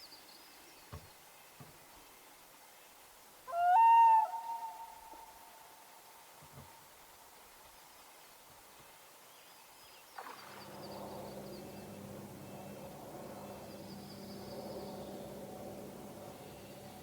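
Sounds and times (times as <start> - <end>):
low motor hum: 10.2 - 17.0.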